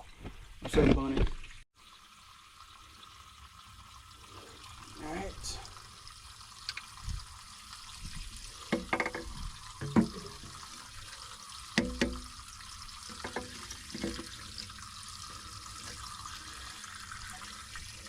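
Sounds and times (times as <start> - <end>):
water running from pipe: 1.0 - 18.0
pipe fittings knocking: 8.6 - 10.8, 11.7 - 14.6.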